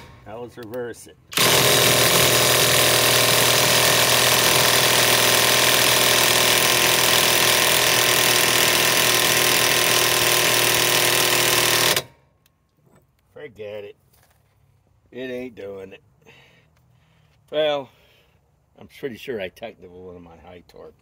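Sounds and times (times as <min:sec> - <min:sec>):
impact wrench hammering: 0:00.0 - 0:00.3, 0:01.3 - 0:12.2.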